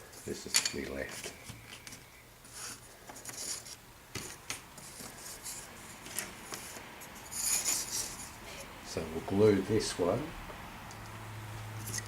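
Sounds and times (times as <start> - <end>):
scratchy rubbing: 2.4 - 3.8, 4.8 - 8.7.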